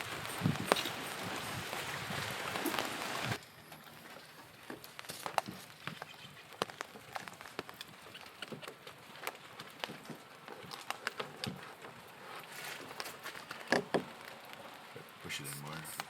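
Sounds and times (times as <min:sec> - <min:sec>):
steady hiss: 0:12.2 - 0:16.0.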